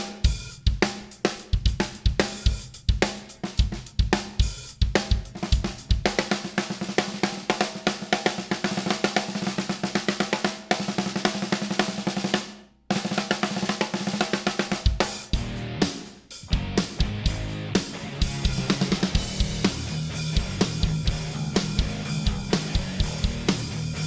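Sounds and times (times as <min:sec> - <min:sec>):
snare drum strokes and rolls: 0:00.0 - 0:24.0
bass drum hits: 0:16.5 - 0:24.0.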